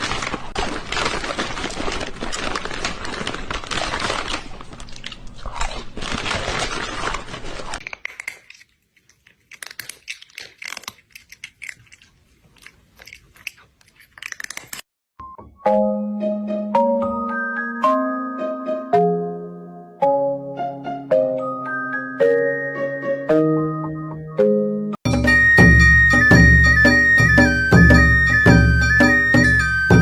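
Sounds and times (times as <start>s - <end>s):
crunchy chewing: 0.0s - 14.9s
glockenspiel-like music notes: 15.2s - 30.0s.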